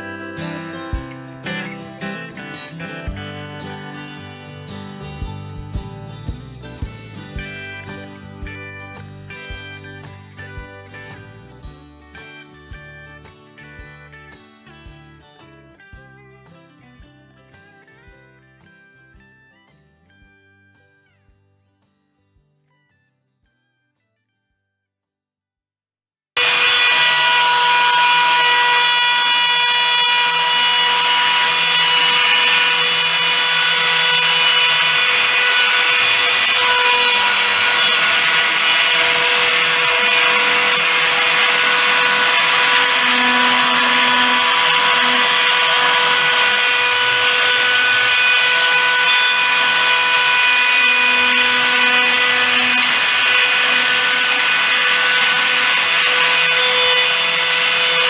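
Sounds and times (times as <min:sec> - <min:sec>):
cutting or grinding noise: 0:26.4 - 0:58.0
power tool whining: 0:26.4 - 0:58.0.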